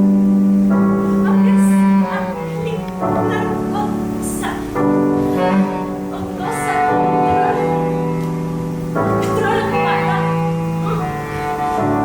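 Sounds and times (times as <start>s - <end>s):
slow music of long notes: 0.0s - 12.0s.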